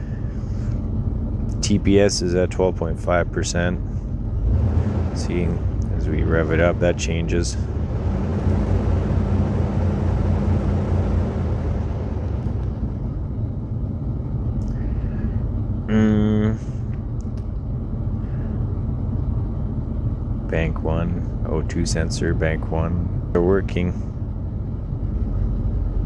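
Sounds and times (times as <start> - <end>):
car engine revving: 0.0 - 13.7, 20.2 - 24.1.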